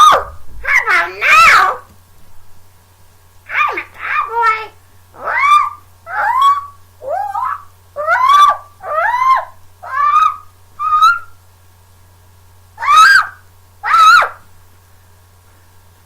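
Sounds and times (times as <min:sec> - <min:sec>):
high-pitched rising cries: 0:00.0 - 0:01.9, 0:03.5 - 0:11.3, 0:12.8 - 0:14.4.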